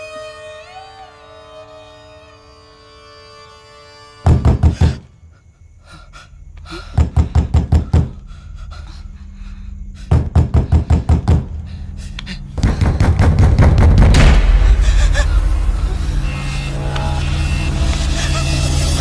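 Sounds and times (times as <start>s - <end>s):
sharp percussive knocks: 12.6s - 15.3s.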